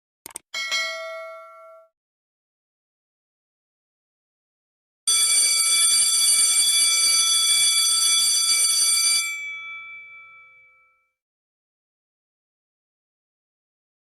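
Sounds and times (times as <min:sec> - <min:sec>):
electric school bell ringing: 0:05.1 - 0:11.2.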